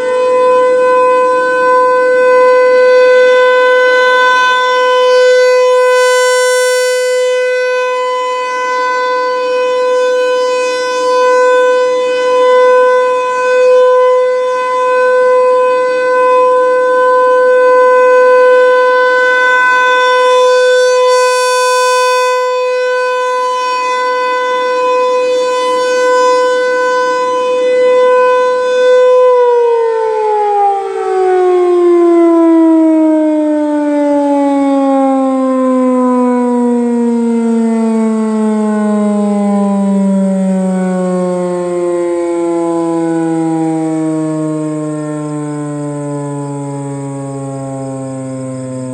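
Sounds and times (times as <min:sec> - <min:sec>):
rotating siren wailing: 0:00.0 - 0:48.9
siren winding down: 0:00.0 - 0:48.9.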